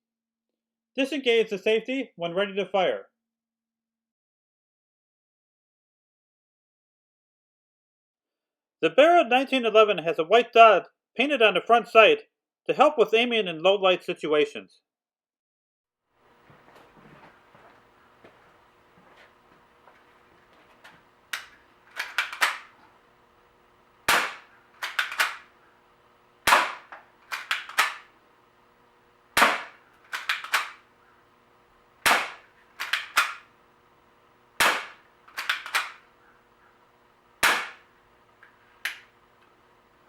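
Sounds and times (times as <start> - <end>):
pistol slide clicking: 21.3 - 22.8, 24.1 - 25.5, 26.5 - 28.1, 29.4 - 30.8, 32.1 - 33.5, 34.6 - 36.0, 37.4 - 37.8
air pistol shots: 21.3 - 22.9, 24.0 - 25.7, 26.4 - 28.2, 29.3 - 31.0, 32.0 - 33.6, 34.6 - 36.1, 37.4 - 37.9.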